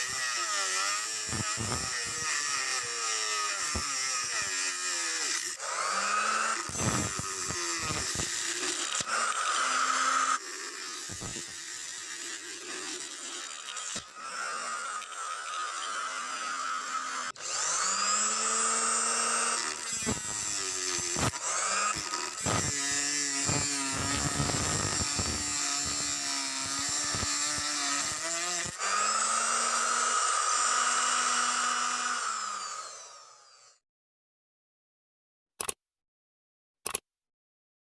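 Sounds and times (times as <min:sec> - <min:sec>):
circular saw motor whining: 0:00.0 - 0:33.8
saw blade scraping workpiece: 0:06.5 - 0:18.2.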